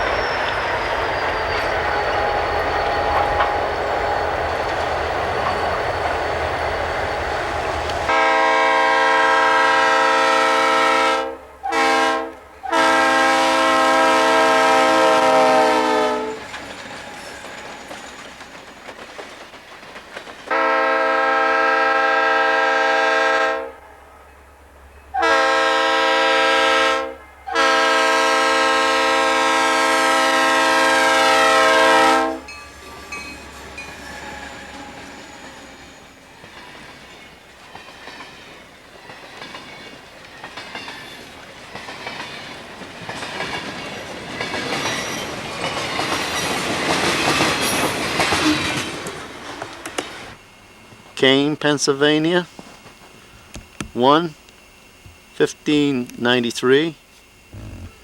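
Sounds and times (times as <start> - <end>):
train rumble and wheel clatter: 0.0 - 58.0
locomotive air horn blasts: 8.1 - 16.4, 20.5 - 23.8, 25.1 - 32.6.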